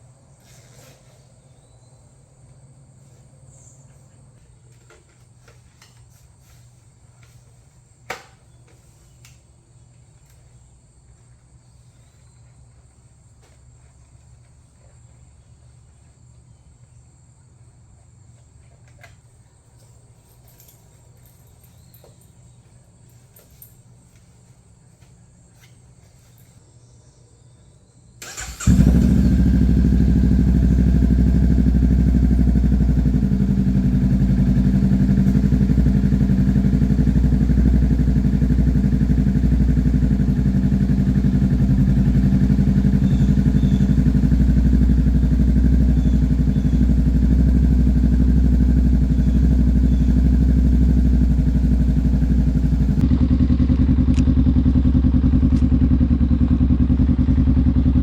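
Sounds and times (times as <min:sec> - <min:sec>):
motorcycle engine starting and idling: 0:28.2 - 0:58.0.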